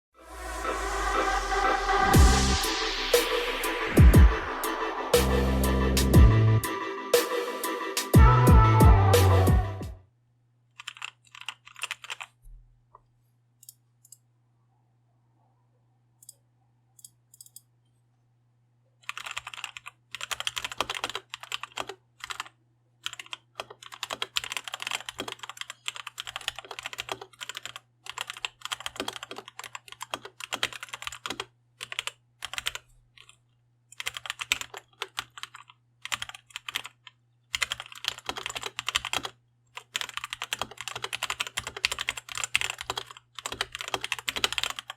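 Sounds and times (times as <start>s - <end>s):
typing on mechanical keyboard: 10.7s - 12.4s, 19.0s - 33.4s, 34.0s - 44.9s.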